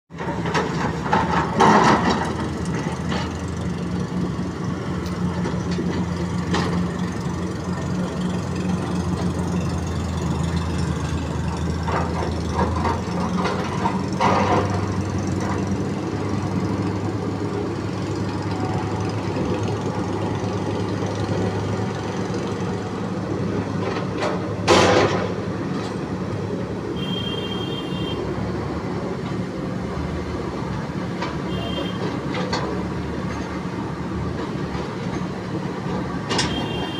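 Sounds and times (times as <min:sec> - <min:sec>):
backhoe diesel engine running: 0:00.1 - 0:36.9.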